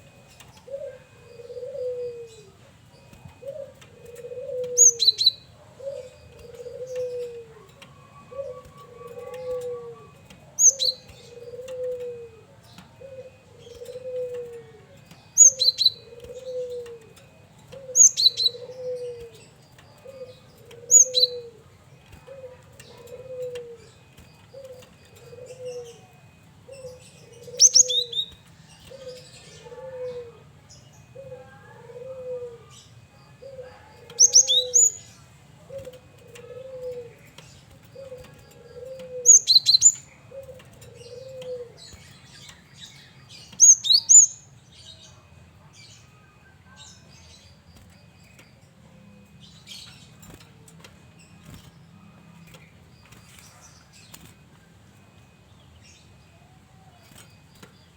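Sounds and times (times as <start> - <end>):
low two-note coo: 0.7 - 2.6, 3.4 - 15.2, 15.9 - 24.0, 28.8 - 41.8.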